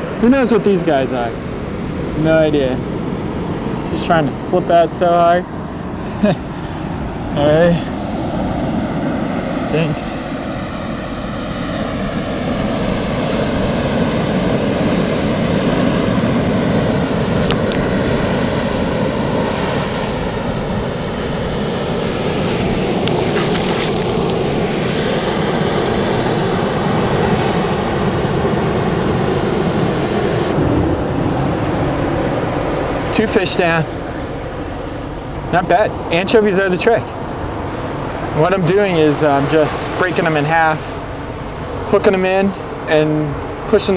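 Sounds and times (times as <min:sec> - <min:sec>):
ocean surf washing onto beach: 0:00.0 - 0:43.9
wind on microphone: 0:06.8 - 0:33.1.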